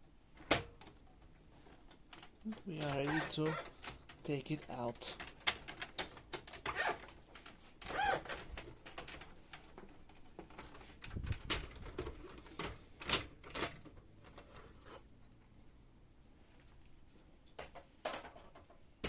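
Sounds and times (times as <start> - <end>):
plastic printer parts clicking and scraping: 0.4 - 15.1.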